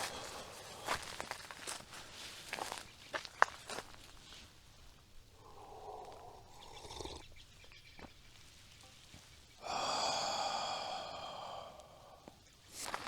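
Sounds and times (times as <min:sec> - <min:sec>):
man sighing: 0:09.6 - 0:12.4.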